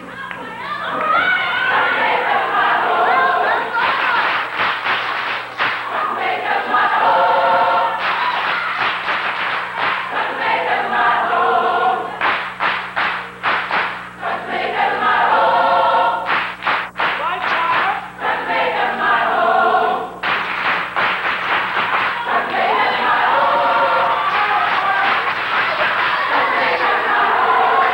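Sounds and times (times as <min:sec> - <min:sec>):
low electrical hum: 0:00.0 - 0:27.9
choir singing: 0:00.8 - 0:09.0, 0:09.6 - 0:12.2, 0:14.2 - 0:16.3, 0:18.2 - 0:20.2, 0:21.9 - 0:27.9
rhythmic percussive beats: 0:16.3 - 0:18.2, 0:20.2 - 0:22.6.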